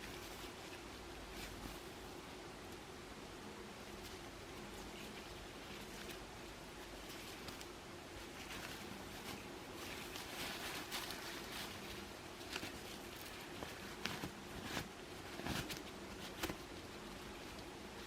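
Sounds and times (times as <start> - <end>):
faint steady hum: 0.0 - 18.0
clicks and rustles of handling: 3.8 - 18.0.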